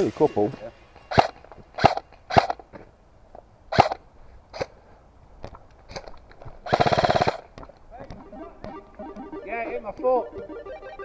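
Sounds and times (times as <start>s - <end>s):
airsoft gun shots: 1.1s - 2.6s, 3.7s - 4.0s, 6.7s - 7.5s.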